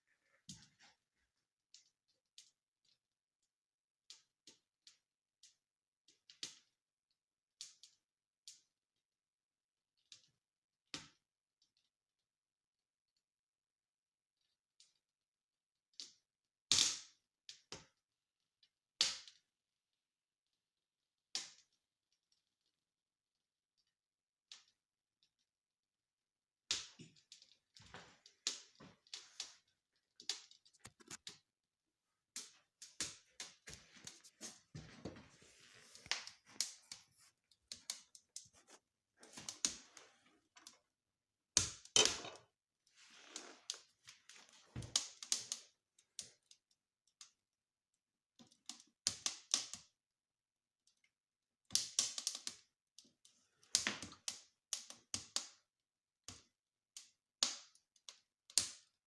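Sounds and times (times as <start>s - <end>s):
wood fire crackling and popping: 32.4s - 40.8s.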